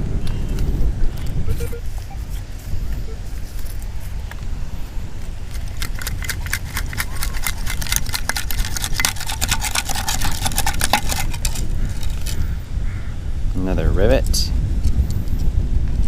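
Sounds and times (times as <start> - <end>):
wind buffeting microphone: 0.0 - 16.0
sand rattling in scoop: 5.5 - 12.3.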